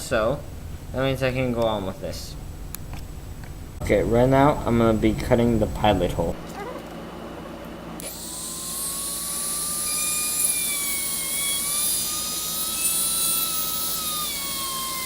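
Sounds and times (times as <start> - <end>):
rotary tool high-pitched whine: 8.0 - 15.0.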